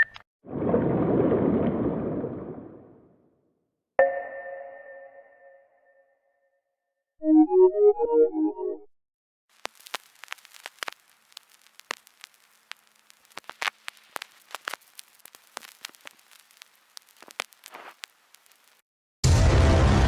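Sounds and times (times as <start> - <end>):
sharp crackles and pops: 9.5 - 18.8
faint hiss: 9.6 - 18.8.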